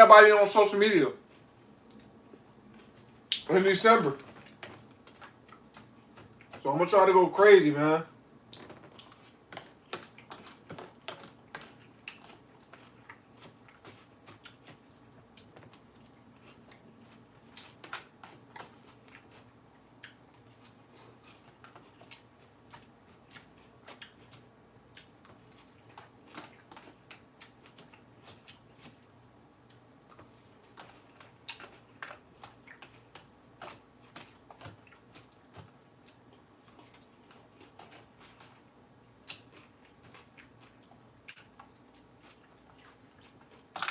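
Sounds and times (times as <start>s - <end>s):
person chewing crunchy lettuce: 1.2s - 7.2s, 7.8s - 43.9s.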